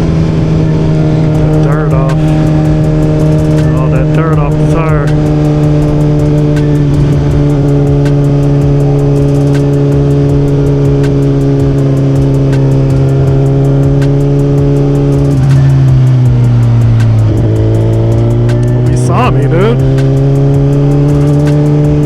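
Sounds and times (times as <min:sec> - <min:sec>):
motorcycle engine cruising: 0:00.0 - 0:22.0.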